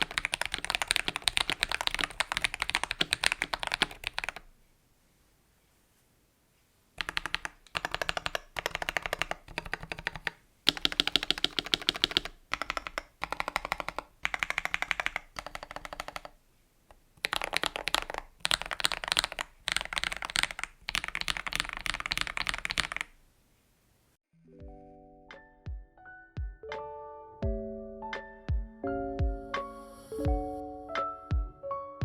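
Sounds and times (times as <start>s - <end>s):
mechanical keyboard typing: 0.0s - 4.4s, 7.0s - 16.4s, 17.2s - 23.2s.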